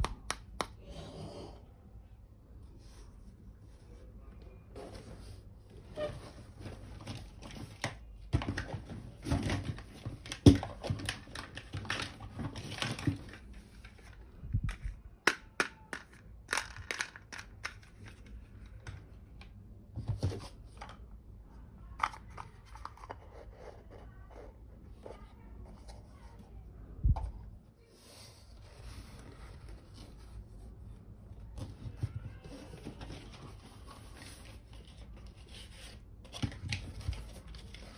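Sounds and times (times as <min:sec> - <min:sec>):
plastic toy pieces clicking: 0:15.3 - 0:18.2.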